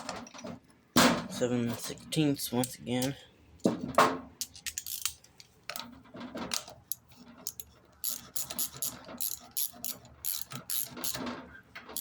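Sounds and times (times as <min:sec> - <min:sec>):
socket and ratchet clicking: 0:04.4 - 0:05.5, 0:06.5 - 0:11.2.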